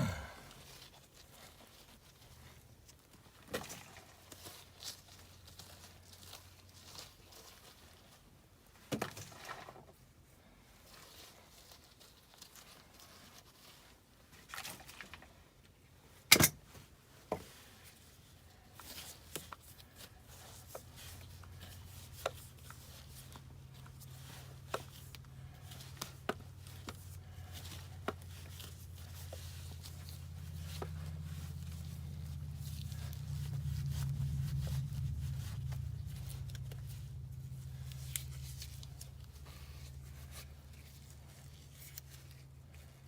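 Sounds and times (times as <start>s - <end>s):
low steady hum: 16.9s - 43.0s.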